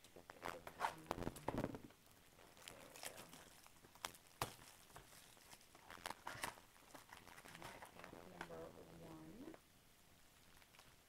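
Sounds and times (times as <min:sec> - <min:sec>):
packaging being handled: 0:02.4 - 0:08.7.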